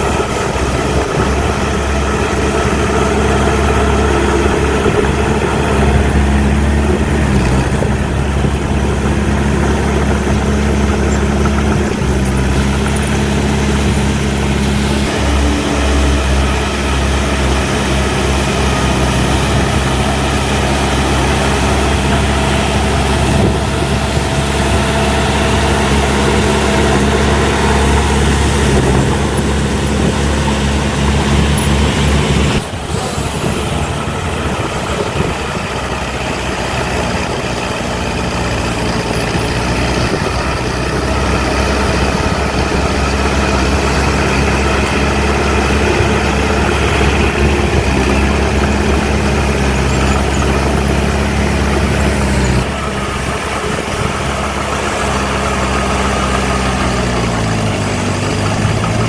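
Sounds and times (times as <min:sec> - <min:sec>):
heavy diesel machinery engines: 0:00.0 - 0:59.0.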